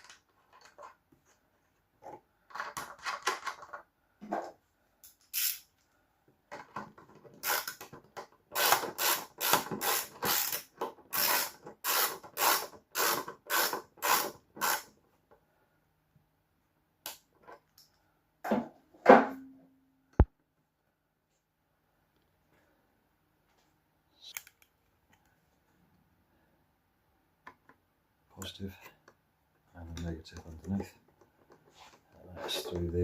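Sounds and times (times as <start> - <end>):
hand tool ratcheting: 7.4 - 7.8, 8.5 - 14.9.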